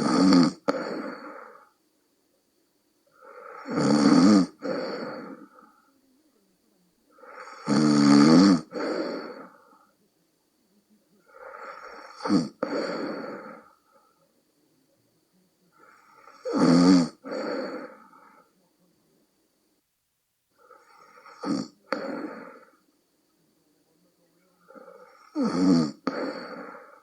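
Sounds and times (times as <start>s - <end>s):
person snoring: 0.0s - 1.8s, 3.1s - 5.8s, 7.1s - 9.7s, 11.2s - 13.8s, 15.7s - 18.5s, 20.6s - 22.8s, 24.6s - 27.0s.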